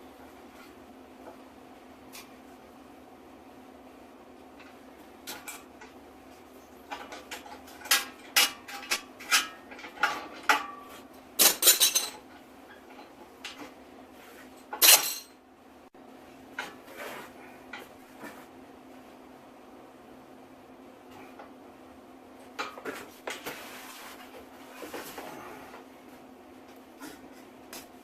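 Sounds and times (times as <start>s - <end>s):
metal objects clinking and clattering: 11.4s - 13.6s, 14.6s - 15.3s.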